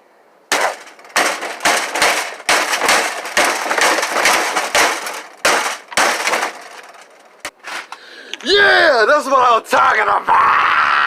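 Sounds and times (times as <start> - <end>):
banging on plastic and metal: 0.5 - 8.0.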